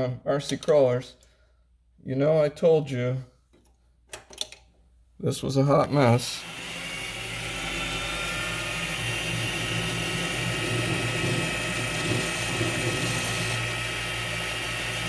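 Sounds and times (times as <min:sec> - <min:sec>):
metal lathe whirring: 0:05.8 - 0:15.0.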